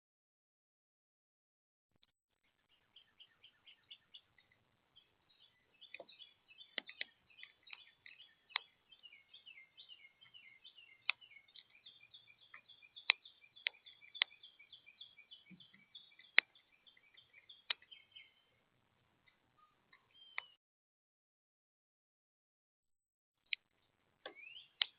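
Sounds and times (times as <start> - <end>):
small birds chirping: 2.1 - 20.6, 23.4 - 24.9
sharp clicks: 5.8 - 8.8, 10.2 - 11.8, 12.4 - 14.5, 15.5 - 17.9.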